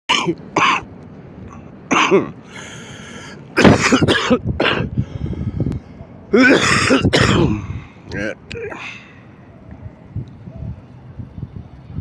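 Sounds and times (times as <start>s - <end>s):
person coughing: 0.1s - 0.8s, 1.9s - 2.3s, 3.6s - 4.9s, 6.4s - 7.7s.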